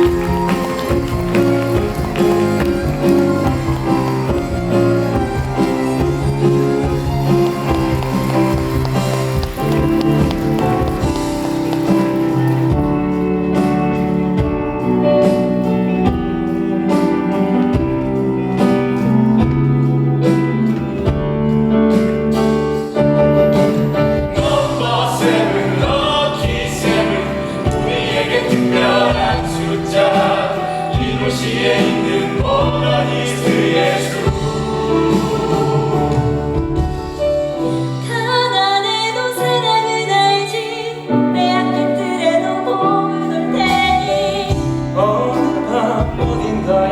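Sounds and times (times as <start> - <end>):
live band accompaniment: 0.0 - 46.9
ensemble singing: 24.3 - 46.9.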